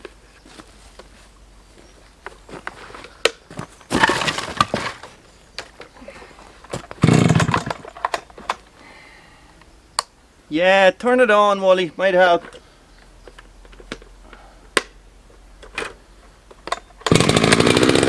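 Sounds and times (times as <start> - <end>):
chainsaw recoil starter pulls: 3.8 - 5.2, 6.6 - 8.7, 16.6 - 18.0.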